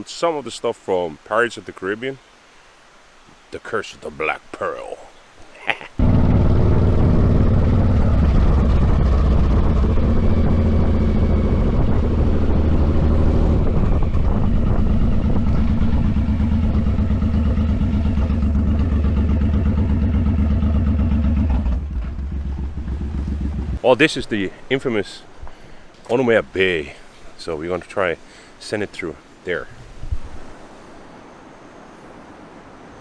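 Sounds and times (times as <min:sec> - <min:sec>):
vehicle engine running: 0:06.0 - 0:24.6.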